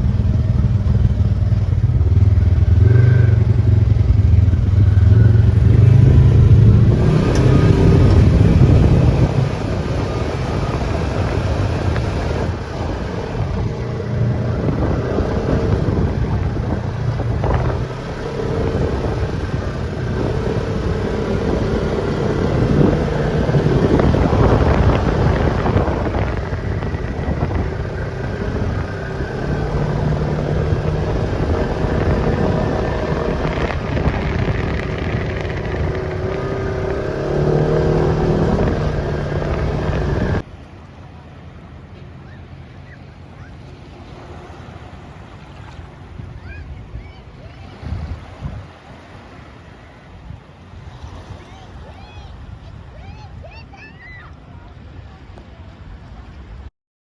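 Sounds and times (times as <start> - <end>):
off-road vehicle engine revving: 0.0 - 40.5.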